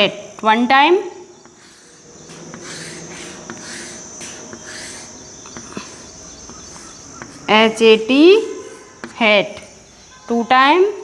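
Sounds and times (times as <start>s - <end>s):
pen scratching on paper: 1.4s - 9.3s.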